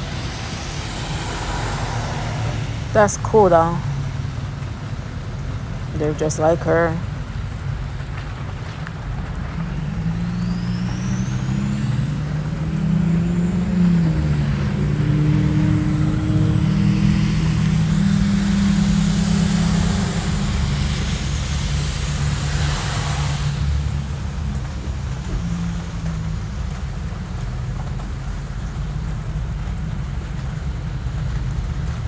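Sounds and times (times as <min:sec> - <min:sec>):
rushing hiss: 0:00.0 - 0:06.9, 0:09.8 - 0:26.2
vehicle engine humming: 0:00.0 - 0:32.0.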